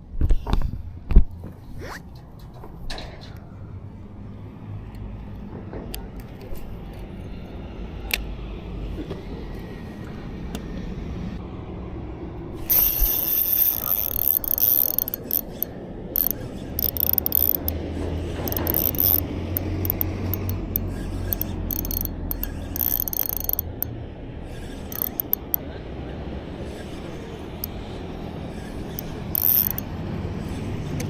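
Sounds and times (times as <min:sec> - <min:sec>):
spinning reel whirring: 0:12.6 - 0:25.6, 0:26.7 - 0:30.7.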